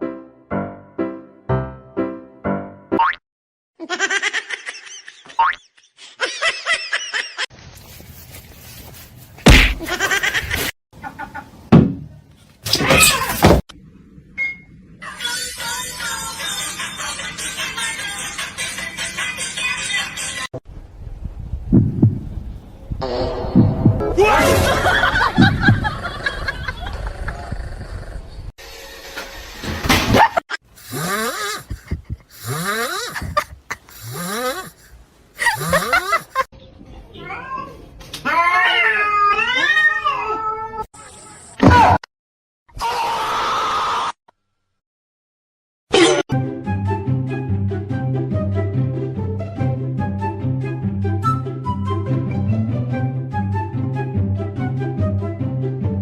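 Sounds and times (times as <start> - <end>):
cat yowling: 37.2 - 40.8.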